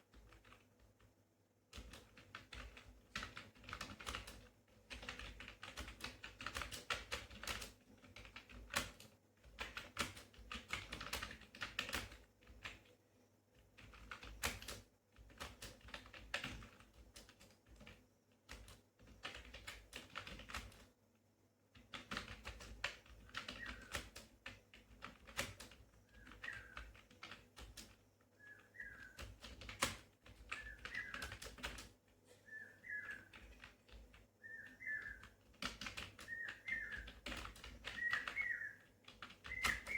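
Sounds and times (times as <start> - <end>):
computer keyboard typing: 0.0 - 1.1, 1.7 - 20.9, 21.7 - 32.2, 32.8 - 39.9
bird chirping: 23.4 - 24.0, 26.0 - 27.0, 28.3 - 29.4, 30.4 - 31.6, 32.3 - 35.4, 36.0 - 39.9.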